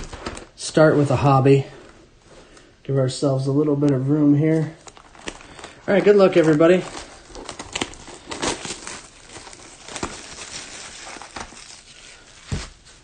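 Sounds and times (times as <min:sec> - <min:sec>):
plastic packaging crinkling and tearing: 0:00.0 - 0:01.2, 0:03.9 - 0:13.0.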